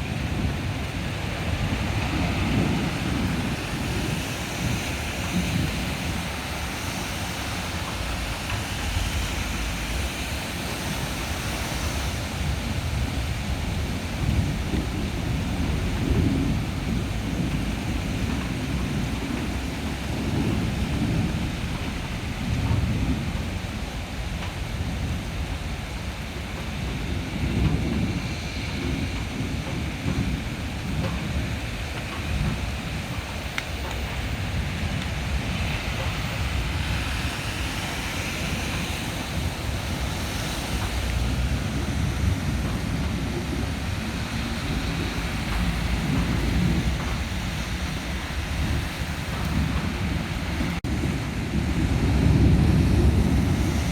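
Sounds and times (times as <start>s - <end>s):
heavy rain hissing: 0.0s - 53.9s
thunder rumbling: 0.0s - 53.9s
wind: 0.0s - 53.9s.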